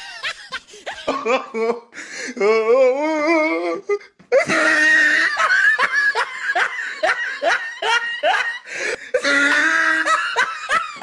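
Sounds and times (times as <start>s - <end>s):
person laughing hard: 0.0s - 2.0s, 4.3s - 11.0s.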